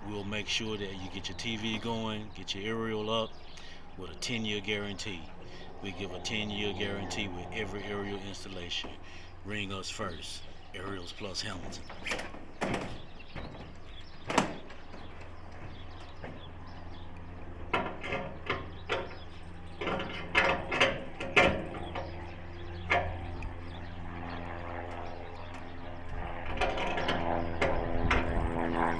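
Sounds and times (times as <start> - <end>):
low mechanical hum: 0.0 - 28.9
clicks and clanks: 17.7 - 22.2, 26.5 - 28.4.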